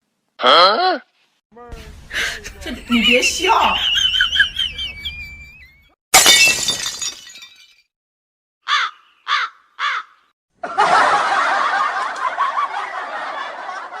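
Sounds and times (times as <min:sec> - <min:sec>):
crow cawing: 0:08.6 - 0:10.3
burst of laughter: 0:10.6 - 0:14.0.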